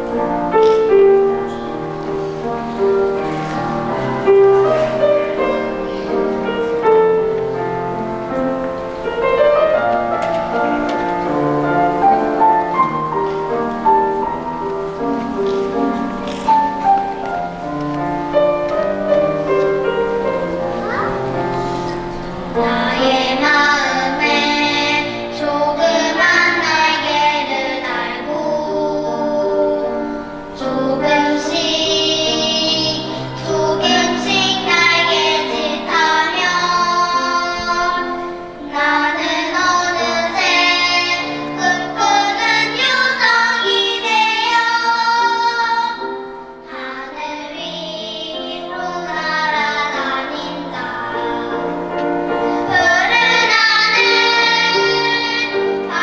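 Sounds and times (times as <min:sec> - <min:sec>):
children singing: 0:00.0 - 0:56.0
instrumental accompaniment: 0:00.0 - 0:56.0.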